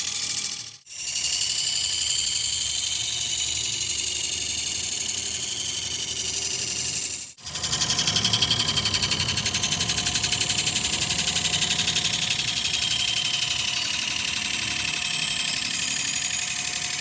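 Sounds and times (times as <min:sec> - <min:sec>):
sharpening machine whining: 0:00.0 - 0:17.0.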